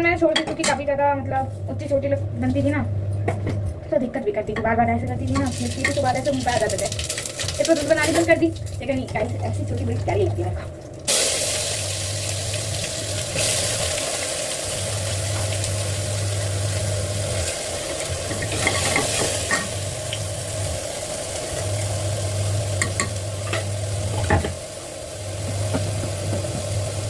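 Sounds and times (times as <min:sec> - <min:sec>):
food sizzling in a pan: 0:05.4 - 0:09.8, 0:11.1 - 0:27.0.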